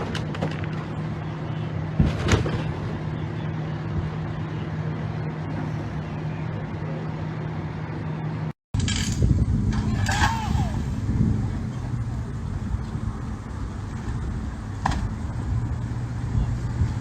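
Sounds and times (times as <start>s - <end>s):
engine humming: 0.0s - 17.0s.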